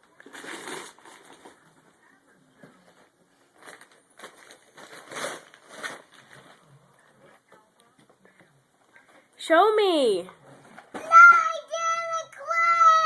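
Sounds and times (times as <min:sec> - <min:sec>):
packaging rustling and crinkling: 0:00.1 - 0:01.7, 0:02.9 - 0:06.7.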